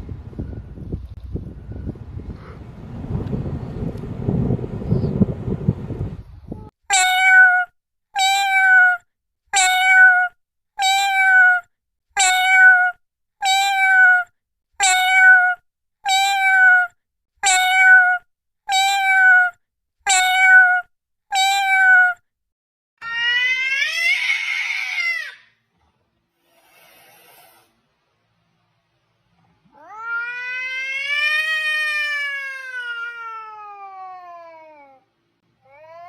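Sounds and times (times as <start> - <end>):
cat meowing: 6.9 - 11.6, 12.2 - 22.2, 23.0 - 25.4, 29.7 - 35.0.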